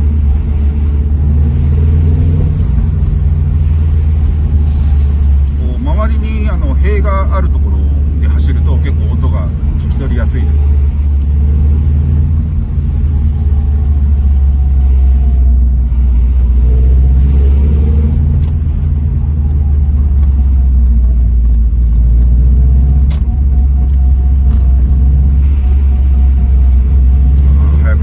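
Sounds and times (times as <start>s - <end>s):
engine and road rumble: 0.0s - 28.0s.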